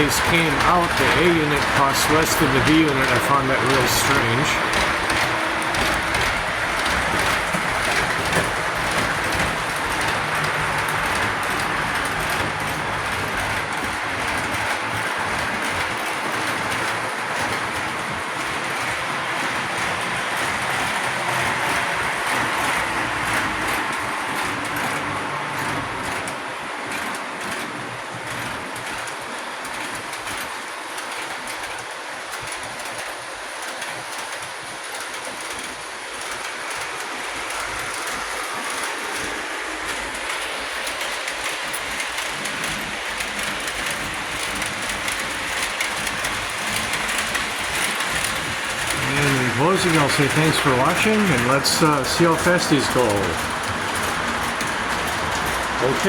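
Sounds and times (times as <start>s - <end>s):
steady motor hum: 0.0s - 24.8s
model train wheels clattering: 0.0s - 56.0s.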